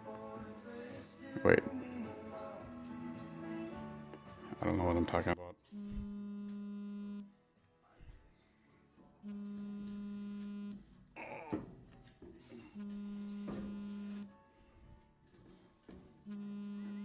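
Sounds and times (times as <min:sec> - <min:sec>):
electric buzz pulses: 0:05.8 - 0:07.2, 0:09.3 - 0:10.8, 0:12.8 - 0:14.3, 0:16.3 - 0:17.0.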